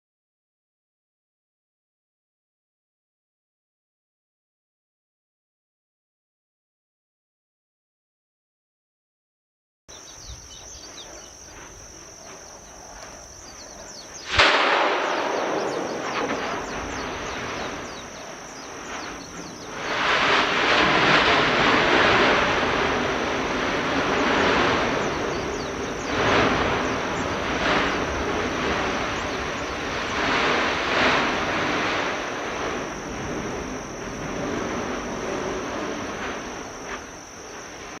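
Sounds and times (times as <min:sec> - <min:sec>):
loud explosive burst: 0:14.2 - 0:37.2
lava fountaining and spattering: 0:14.3 - 0:38.0.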